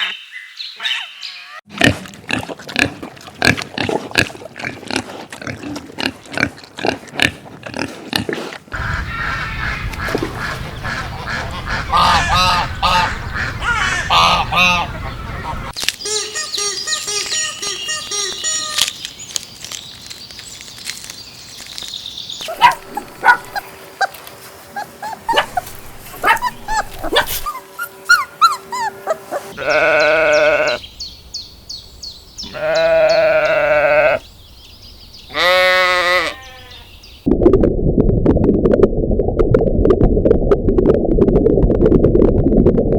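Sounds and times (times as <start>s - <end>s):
chirping calls: 10.7s - 35.8s
loud long bleats: 29.5s - 30.8s, 32.4s - 34.2s, 35.3s - 36.9s.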